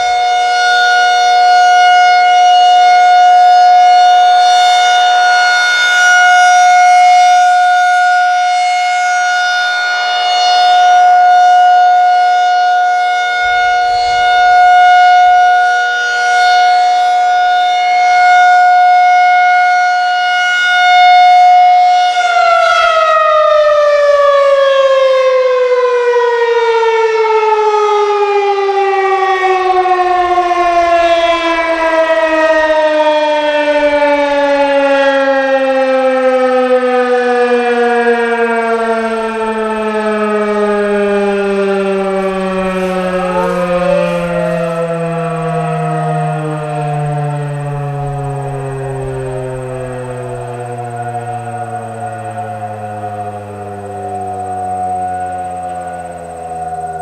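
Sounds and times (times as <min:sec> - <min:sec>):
rotating warning siren: 0:00.0 - 0:57.0.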